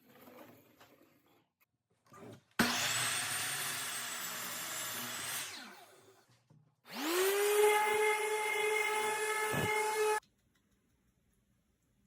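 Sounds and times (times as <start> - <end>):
power tool motor whining: 6.9 - 10.2.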